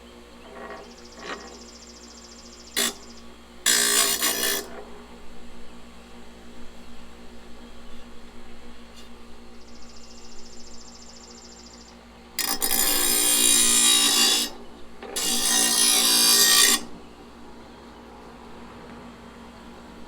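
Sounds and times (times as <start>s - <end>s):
bench grinder humming: 0.4s - 5.3s, 12.4s - 17.8s
metal blade grinding: 0.5s - 1.6s, 2.8s - 5.0s, 12.4s - 17.0s.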